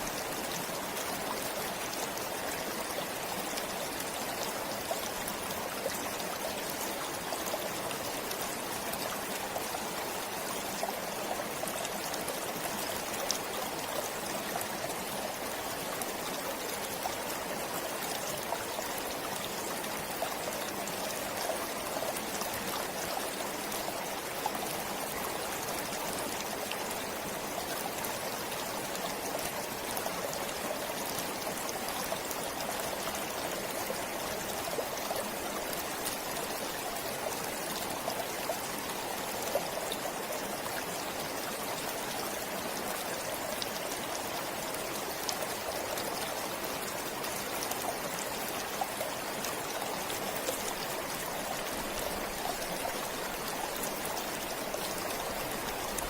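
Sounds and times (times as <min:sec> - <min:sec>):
stream flowing: 0:00.0 - 0:56.0.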